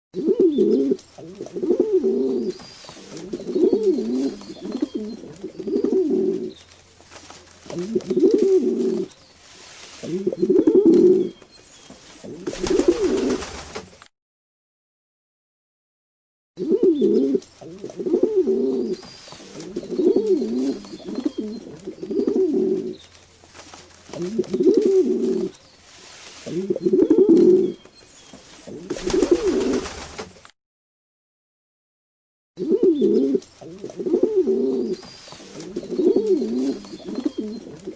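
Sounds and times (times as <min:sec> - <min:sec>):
pigeons cooing: 0:00.2 - 0:06.6, 0:07.6 - 0:09.2, 0:10.0 - 0:11.4, 0:12.2 - 0:13.5, 0:16.6 - 0:23.0, 0:24.1 - 0:25.6, 0:26.4 - 0:30.0, 0:32.6 - 0:37.9.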